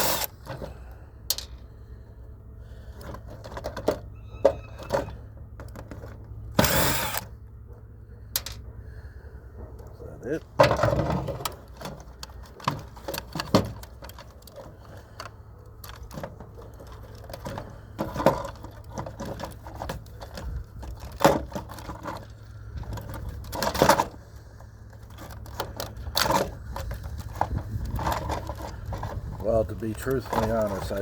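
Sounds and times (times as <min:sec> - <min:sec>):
steady low hum: 0:00.0 - 0:31.0
plastic parts clicking and rattling: 0:02.9 - 0:07.3, 0:08.3 - 0:08.7, 0:10.6 - 0:24.2, 0:24.9 - 0:31.0.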